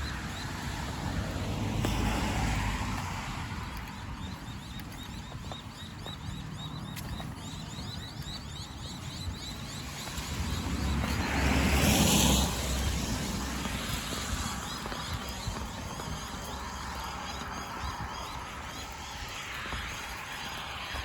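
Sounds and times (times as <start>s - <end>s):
car tyres hissing on wet road: 0.7s - 3.5s, 9.9s - 15.1s.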